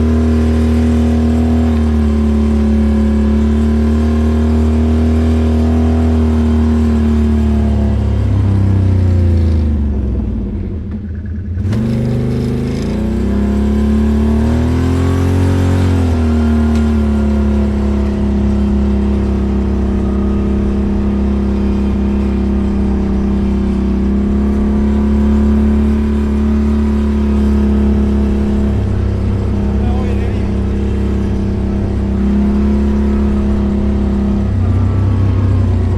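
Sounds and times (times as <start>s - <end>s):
atv engine running: 0.0s - 35.9s.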